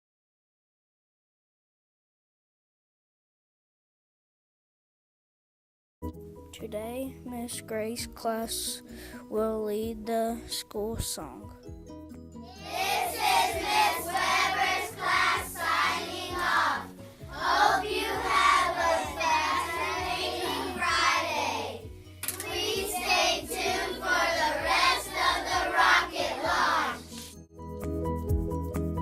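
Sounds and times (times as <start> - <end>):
children singing together: 12.5 - 27.3.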